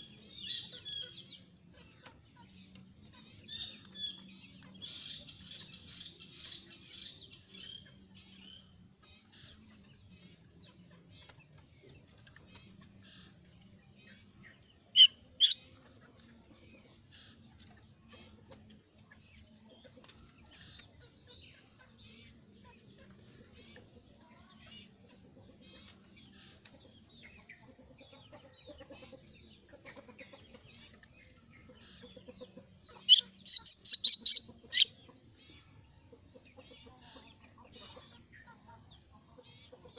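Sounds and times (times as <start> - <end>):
faint bird chips: 32.9 - 34.9
songbird short sharp chirps: 32.9 - 34.9.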